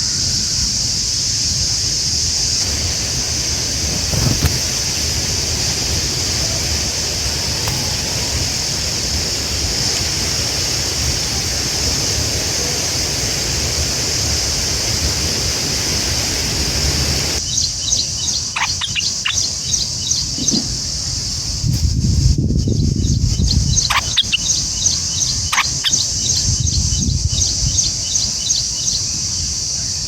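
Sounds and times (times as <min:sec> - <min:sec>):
rushing noise with high hiss: 0:00.0 - 0:30.0
bird chirps and calls: 0:17.4 - 0:20.7, 0:23.0 - 0:29.0.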